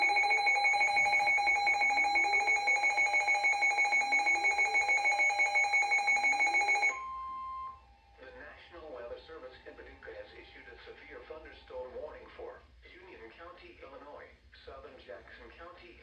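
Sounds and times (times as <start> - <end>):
electronic alert tone pulsing: 0.0 - 7.0
steady beep: 0.0 - 7.2.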